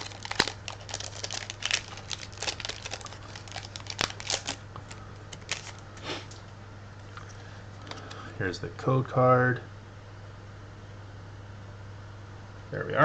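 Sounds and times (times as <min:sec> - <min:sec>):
foil wrapper crinkling: 0:00.0 - 0:06.4.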